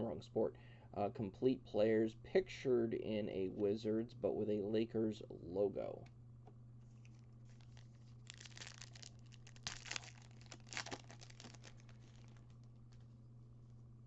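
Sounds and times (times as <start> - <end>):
plastic wrapper ripping: 6.9 - 13.1
plastic wrapper crinkling: 6.9 - 13.2.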